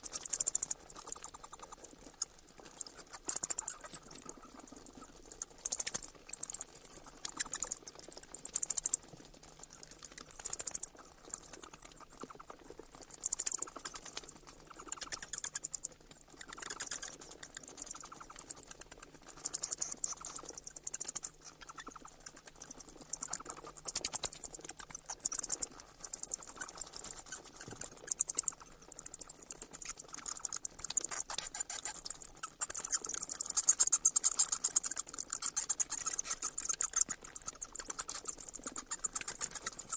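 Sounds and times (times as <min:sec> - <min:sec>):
bats chittering: 0:30.4 - 0:39.9.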